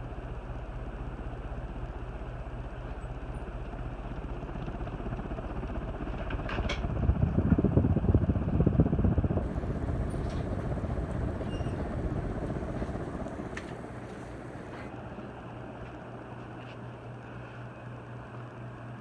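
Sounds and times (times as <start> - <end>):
ceiling fan motor hum: 0.0 - 19.0
rough rumble: 5.2 - 14.9.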